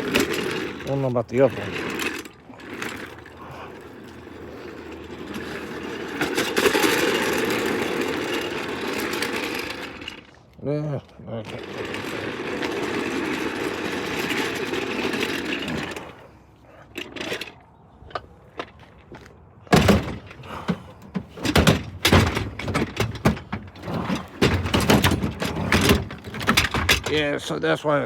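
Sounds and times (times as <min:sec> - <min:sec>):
steady scraping rush: 0:00.0 - 0:10.5, 0:11.3 - 0:18.0
chair thunking and clattering: 0:19.7 - 0:27.2.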